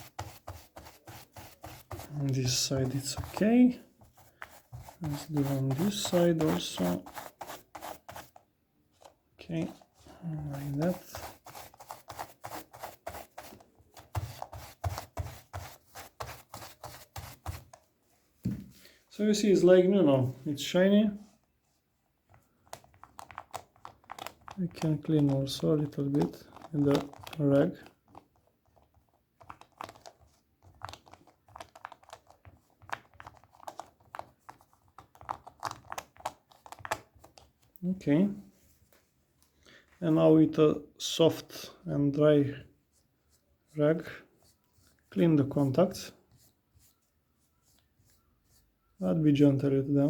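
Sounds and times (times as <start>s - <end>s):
brush scrubbing rubber keypad: 0.0s - 8.4s, 9.0s - 17.8s.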